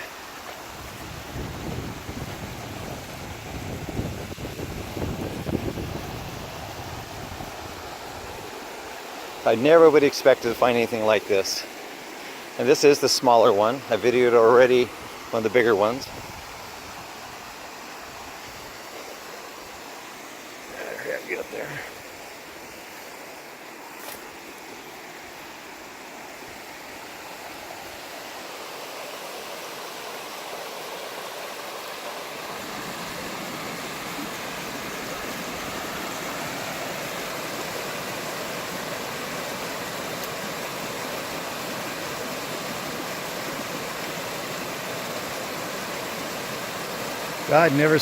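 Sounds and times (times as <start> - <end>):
small waterfall rushing: 0.0 - 48.0.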